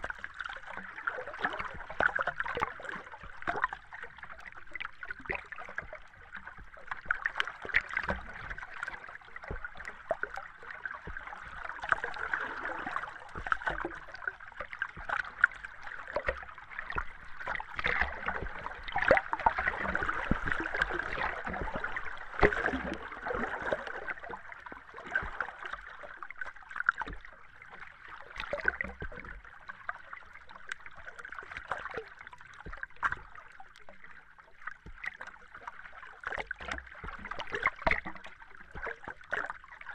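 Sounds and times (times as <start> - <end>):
muffled underwater wash: 0.0 - 39.9
bubbling and gurgling pops: 4.4 - 27.3, 28.4 - 29.4, 36.2 - 39.9.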